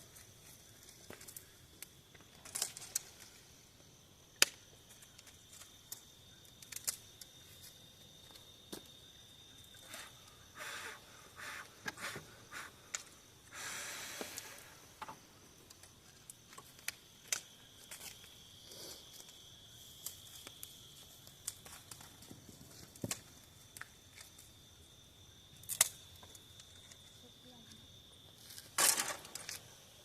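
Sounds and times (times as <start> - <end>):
burning kindling crackling: 0.0 - 8.5, 12.9 - 27.2
insect trill: 0.0 - 30.0
brief hiss: 9.9 - 14.8.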